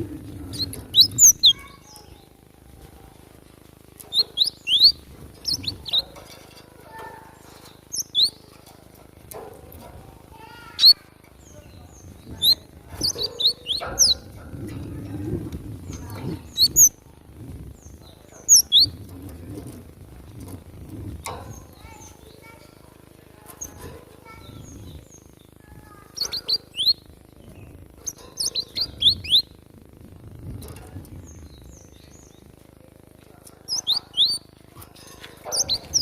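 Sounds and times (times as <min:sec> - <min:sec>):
bird high sharp chirps: 0:00.5 - 0:02.3, 0:04.0 - 0:06.2, 0:07.5 - 0:08.5, 0:10.7 - 0:14.3, 0:16.4 - 0:17.0, 0:18.4 - 0:18.9, 0:26.1 - 0:27.1, 0:28.0 - 0:29.6, 0:33.7 - 0:34.5, 0:35.4 - 0:36.0.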